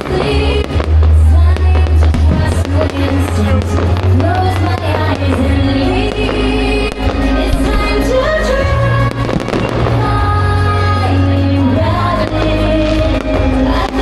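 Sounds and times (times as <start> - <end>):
firework bangs: 0.0 - 11.0
loud music with singing: 0.0 - 14.0.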